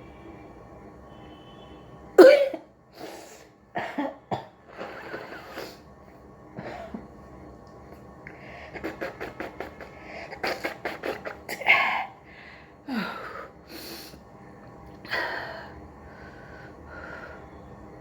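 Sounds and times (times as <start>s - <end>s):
person sniffing and breathing: 8.3s - 14.2s
wheezing sneeze-like exhalations: 8.4s - 12.1s.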